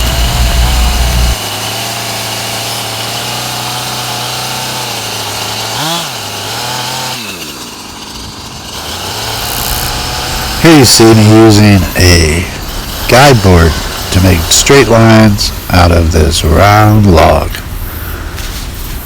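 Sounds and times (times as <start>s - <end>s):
loud low rumble: 0.0s - 1.4s
chainsaw cutting log: 0.0s - 19.0s.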